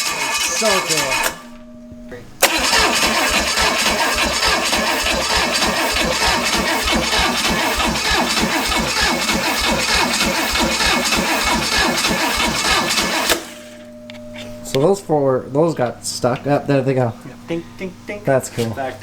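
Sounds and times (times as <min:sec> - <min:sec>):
car engine running: 0:02.4 - 0:13.8.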